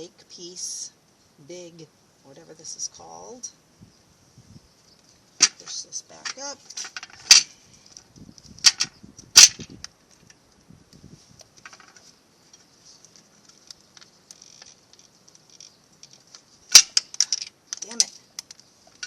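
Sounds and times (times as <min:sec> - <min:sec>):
faint ticking and scraping: 0:04.9 - 0:19.0.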